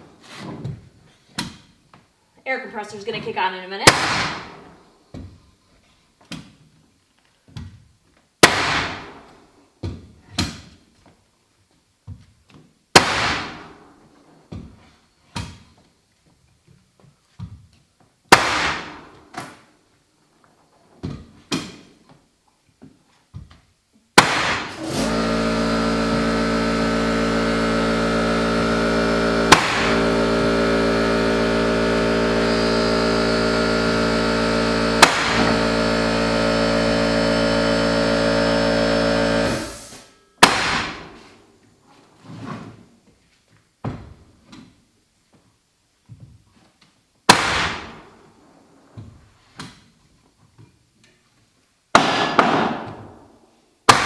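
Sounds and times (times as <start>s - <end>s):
mallet striking floor nailer: 3.8s - 4.8s, 8.4s - 10.7s, 13.0s - 13.7s, 18.3s - 19.6s, 24.2s - 41.4s, 47.3s - 48.0s, 52.0s - 53.2s
air compressor humming: 24.2s - 41.4s.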